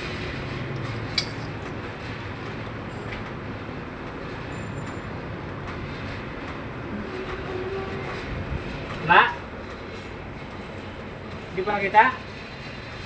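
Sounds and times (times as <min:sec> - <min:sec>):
sharp click: 0:01.2 - 0:01.6.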